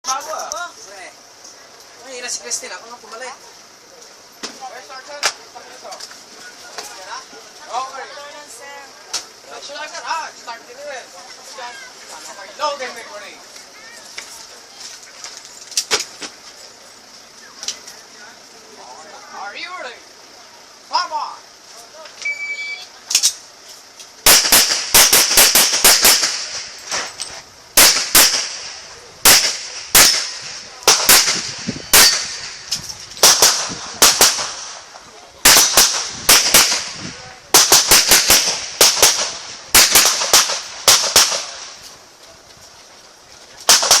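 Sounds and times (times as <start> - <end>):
shot timer beep: 22.2 - 22.9
gunshots: 24.2 - 27.2, 27.8 - 34.8, 35.4 - 41.8, 43.7 - 44.0.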